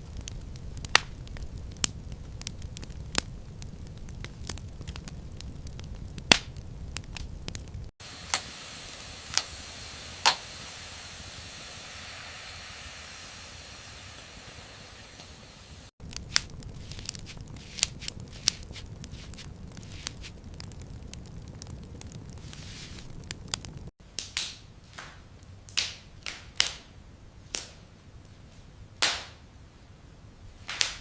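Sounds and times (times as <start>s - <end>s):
low rumble: 0.0s - 23.9s
food crackling and popping: 0.0s - 26.8s
steady high hiss: 7.8s - 23.9s.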